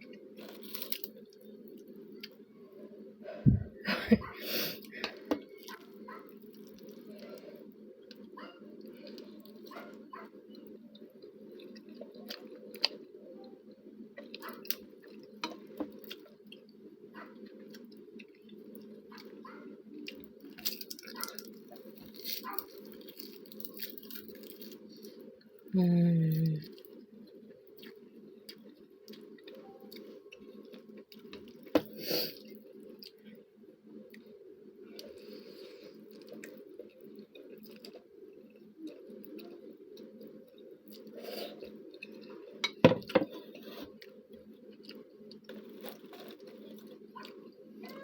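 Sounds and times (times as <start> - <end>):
chewing and biting: 0.0 - 2.4, 14.2 - 25.2
faint chewing: 0.0 - 3.0, 4.2 - 25.7, 26.3 - 48.0
steady low hum: 0.0 - 47.9.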